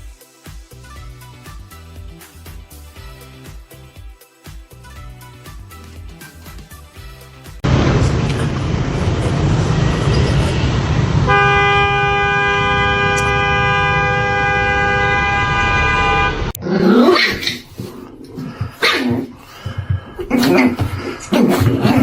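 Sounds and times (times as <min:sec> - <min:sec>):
loud rumbling: 0:07.6 - 0:16.6
vehicle horn: 0:11.2 - 0:16.6.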